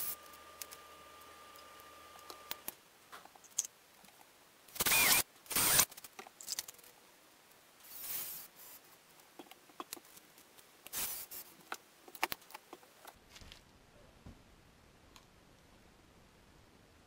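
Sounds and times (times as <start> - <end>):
hissing bursts: 4.7 - 5.9, 7.8 - 8.8, 10.9 - 11.5.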